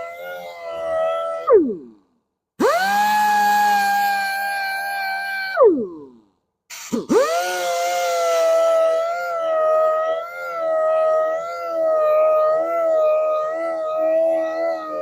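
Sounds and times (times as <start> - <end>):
power sander whining: 2.6 - 4.5.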